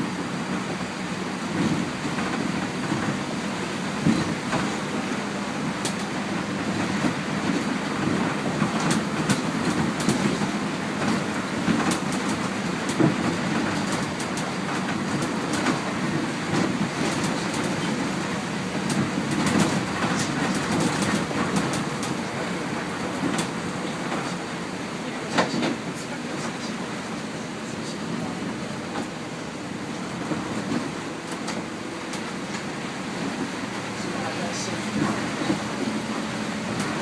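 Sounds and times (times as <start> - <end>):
bus engine and road noise: 0.0 - 37.0.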